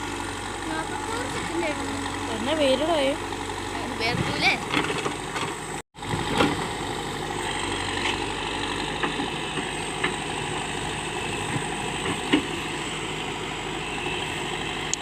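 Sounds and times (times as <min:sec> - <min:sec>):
diesel engine idling: 0:00.0 - 0:15.0.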